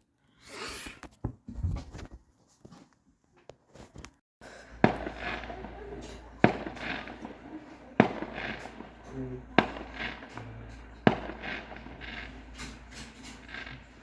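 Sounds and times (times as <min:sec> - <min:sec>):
firework bangs: 0:04.4 - 0:14.0
firework crackling fizz: 0:04.4 - 0:14.0
low rumble: 0:04.4 - 0:14.0.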